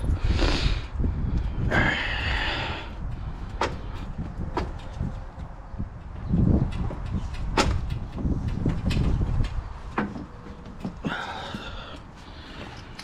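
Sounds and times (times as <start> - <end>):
tools and parts clanking: 3.4 - 13.0.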